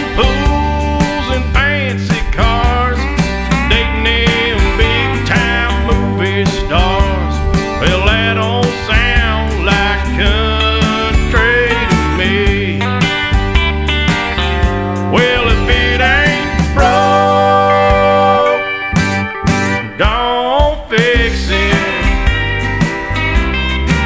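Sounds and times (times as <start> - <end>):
bass line: 0.0 - 20.3, 21.2 - 24.0
steady drum beat: 0.0 - 24.0
gliding guitar lines: 2.1 - 20.6.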